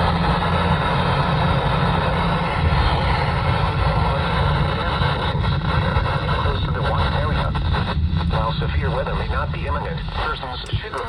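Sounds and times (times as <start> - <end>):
radio static hiss: 10.1 - 11.0.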